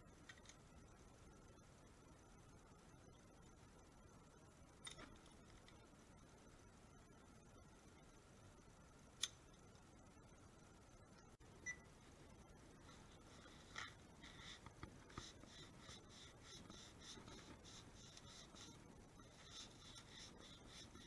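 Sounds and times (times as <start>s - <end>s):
click: 9.2s - 9.4s
quick rubbing strokes: 13.0s - 21.0s.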